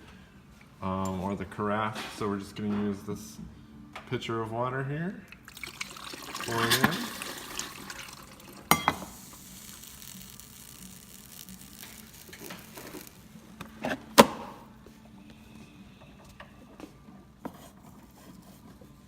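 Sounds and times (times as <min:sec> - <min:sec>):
faint steady hiss: 0:05.0 - 0:13.9.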